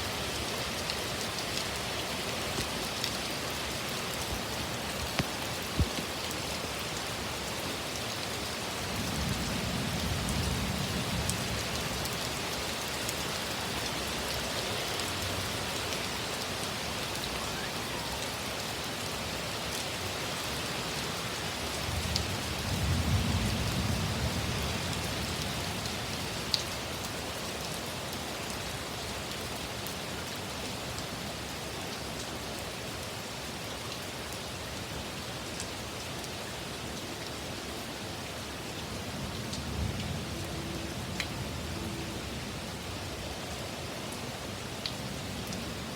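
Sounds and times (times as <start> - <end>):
heavy rain pouring: 0.0 - 45.9
low thunder rumbles: 21.9 - 25.0.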